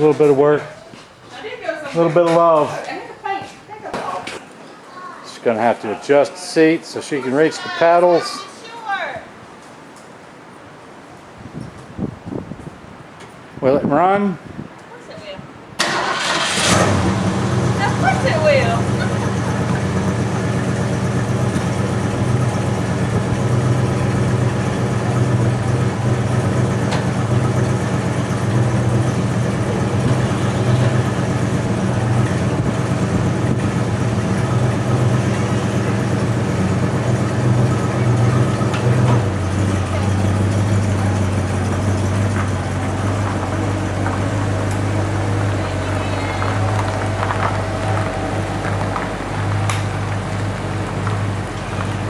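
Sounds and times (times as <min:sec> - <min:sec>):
car engine idling: 0:15.8 - 0:52.0.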